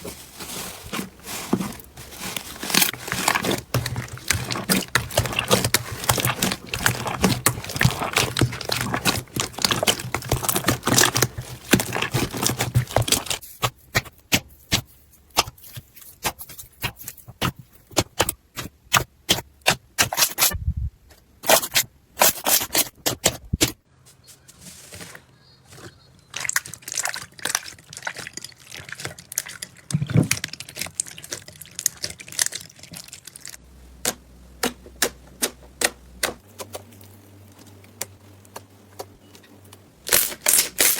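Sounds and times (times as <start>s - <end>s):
slime crackling: 0.0s - 13.4s, 25.8s - 39.1s.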